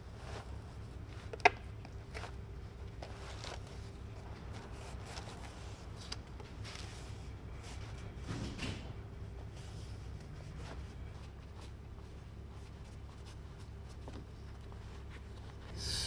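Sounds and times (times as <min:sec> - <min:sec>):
steady low hum: 0:08.9 - 0:16.0.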